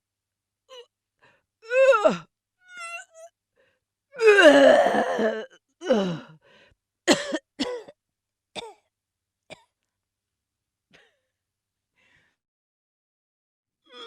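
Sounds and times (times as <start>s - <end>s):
person retching and gagging: 4.2s - 6.0s.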